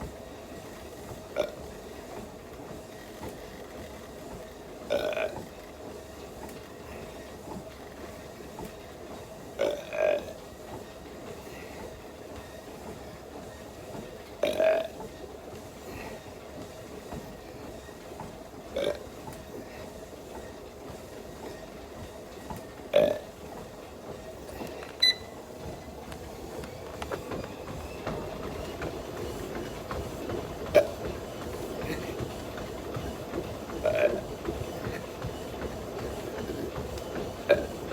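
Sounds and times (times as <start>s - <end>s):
treadmill running: 0.0s - 37.9s
short high beep: 25.0s - 25.3s.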